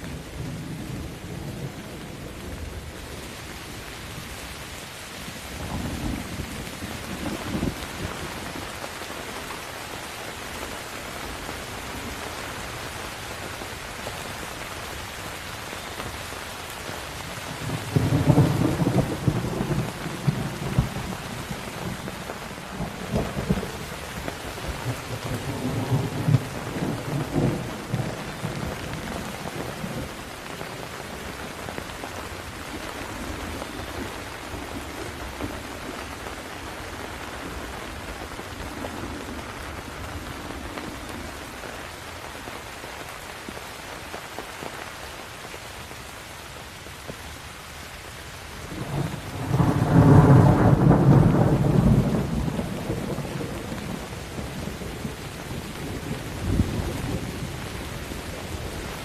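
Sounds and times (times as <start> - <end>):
steady rain: 0.0 - 59.0
thunder rumbling: 17.5 - 32.0, 48.7 - 59.0.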